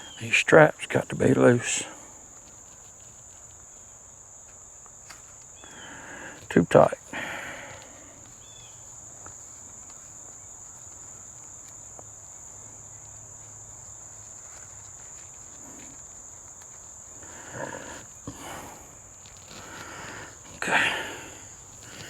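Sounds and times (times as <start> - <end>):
insect chorus buzzing: 0.0 - 22.0
gear rustling: 4.5 - 22.0.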